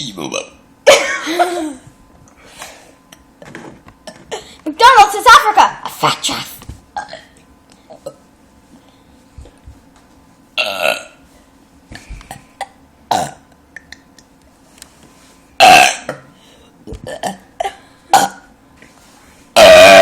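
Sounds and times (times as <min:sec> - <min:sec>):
forced burps: 0:04.0 - 0:04.5, 0:07.0 - 0:08.2, 0:10.6 - 0:11.2, 0:12.3 - 0:13.5, 0:15.6 - 0:16.3, 0:16.9 - 0:18.5, 0:19.6 - 0:20.0.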